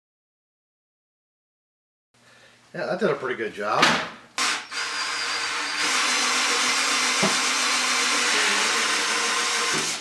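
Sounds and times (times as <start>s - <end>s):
power drill running: 4.4s - 10.0s.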